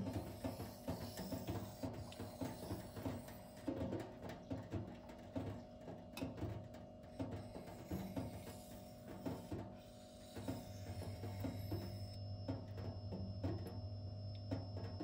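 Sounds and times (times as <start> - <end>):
knife scraping on whetstone: 0.0 - 3.6, 7.4 - 12.2.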